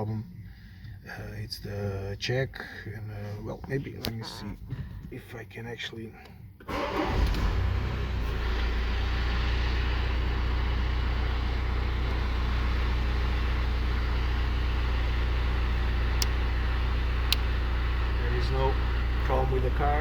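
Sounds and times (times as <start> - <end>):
car engine idling: 6.7 - 20.0.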